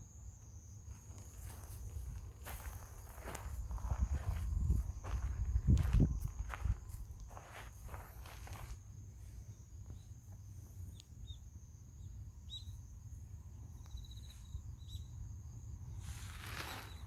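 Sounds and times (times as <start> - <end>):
high insect drone: 0.0 - 17.0
bird chirps: 12.0 - 12.8, 13.8 - 15.1.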